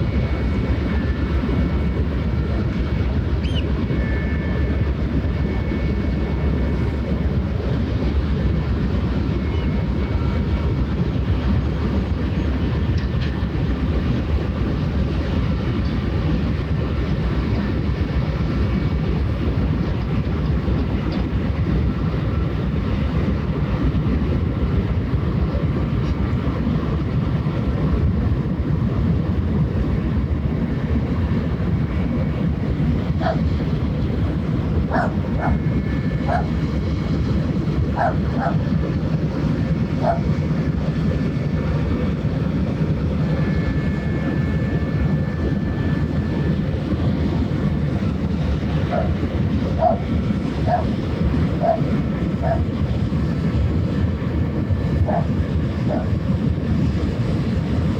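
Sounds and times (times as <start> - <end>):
faint machinery whine: 0.0 - 57.9
ship diesel engine drone: 0.0 - 57.9.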